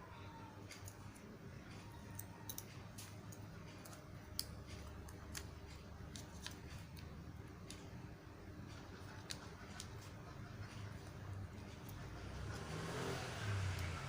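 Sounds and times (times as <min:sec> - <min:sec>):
small clicks and taps: 0:08.7 - 0:12.0.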